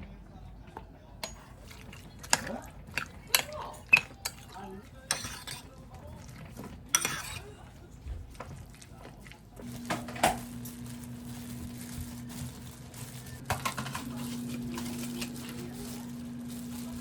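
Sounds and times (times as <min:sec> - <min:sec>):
dishes clinking: 0:00.7 - 0:07.7, 0:13.5 - 0:15.6
electric appliance hum: 0:09.6 - 0:17.0.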